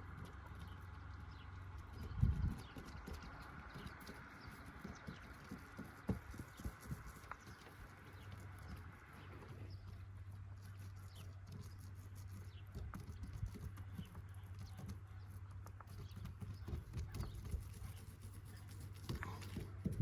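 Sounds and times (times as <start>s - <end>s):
steady low hum: 0.0s - 20.0s
knocks and taps on a tiled roof: 2.1s - 7.4s.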